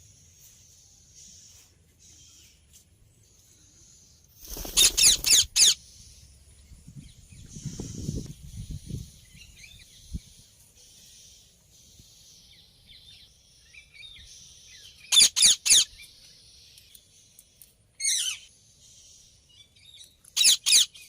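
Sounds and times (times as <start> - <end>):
parakeet shrill screeches: 4.7 - 5.8.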